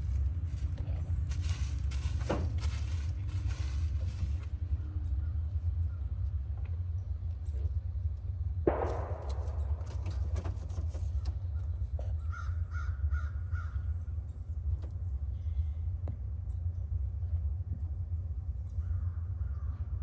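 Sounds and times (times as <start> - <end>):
steady low rumble: 0.0 - 20.0
sudden ringing bang: 8.7 - 11.0
bird calling: 11.0 - 14.0.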